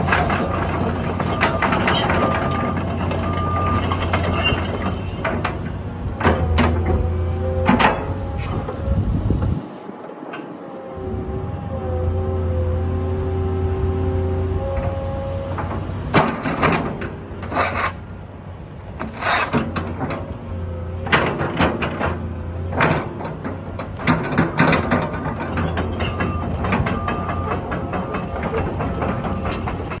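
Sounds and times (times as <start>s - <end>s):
metallic clanks and squeals: 0.0s - 18.1s, 19.0s - 30.0s
excavator diesel engine running: 0.0s - 30.0s
scraping and rattling: 15.6s - 18.0s.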